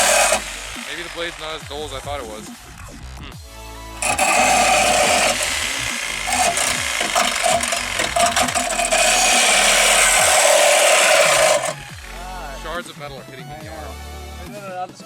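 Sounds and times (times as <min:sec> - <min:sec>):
power saw cutting sheet metal: 0:00.0 - 0:03.0, 0:04.0 - 0:12.4.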